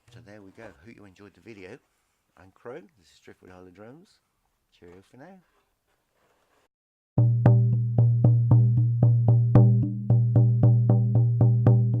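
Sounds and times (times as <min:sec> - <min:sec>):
frame drum beaten in steady pulse: 0:07.2 - 0:12.0.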